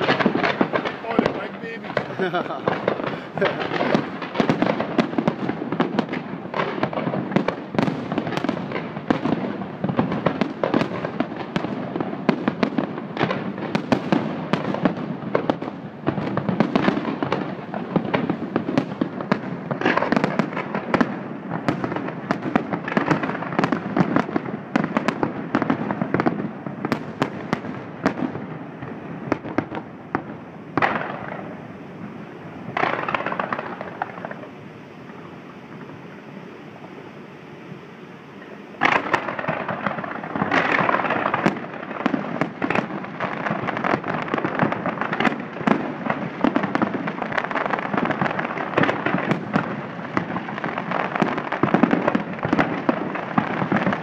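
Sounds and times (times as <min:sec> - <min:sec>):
fireworks bangs and crackling: 0:00.0 - 0:54.0.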